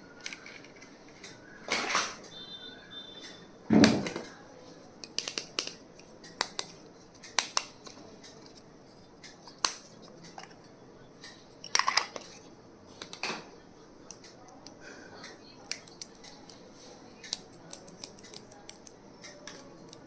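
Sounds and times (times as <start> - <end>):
stationery being handled clicks: 5.0 - 8.6.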